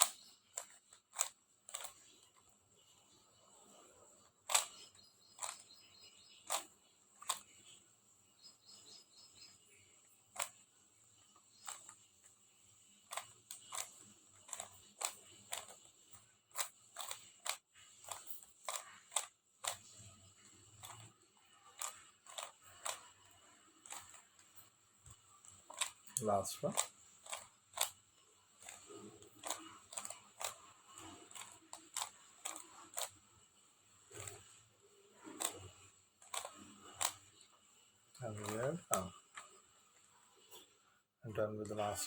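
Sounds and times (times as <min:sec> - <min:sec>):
puzzle cube plastic clicks: 0:00.0 - 0:02.5, 0:04.2 - 0:07.8, 0:10.3 - 0:10.7, 0:11.3 - 0:33.3, 0:34.0 - 0:34.6, 0:35.2 - 0:37.5, 0:38.1 - 0:39.6.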